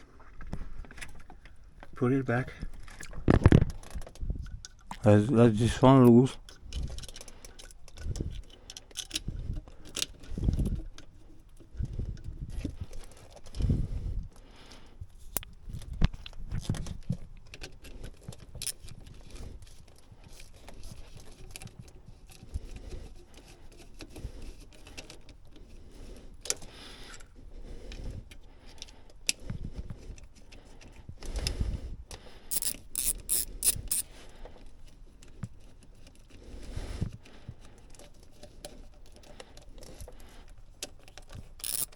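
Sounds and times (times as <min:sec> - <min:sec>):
tools clinking and scraping metal: 0:18.6 - 0:18.9, 0:32.5 - 0:34.1, 0:41.2 - 0:41.9
metallic jingling: 0:32.5 - 0:34.0.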